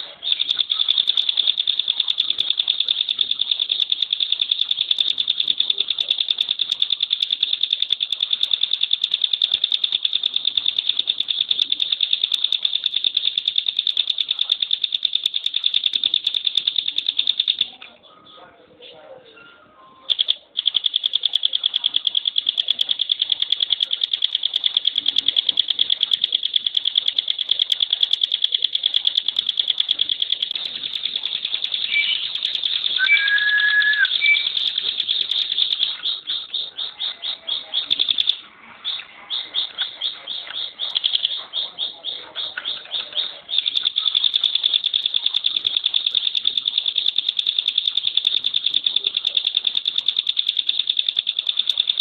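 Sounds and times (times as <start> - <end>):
bird rapid trill: 0.0 - 17.7, 20.0 - 52.0
bird low whistles: 33.0 - 34.6.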